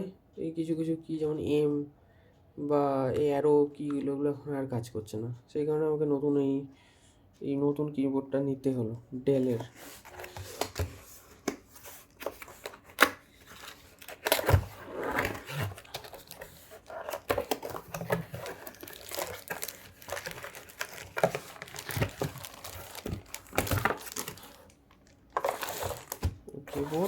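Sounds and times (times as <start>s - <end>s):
packaging crinkling and tearing: 9.8s - 27.0s.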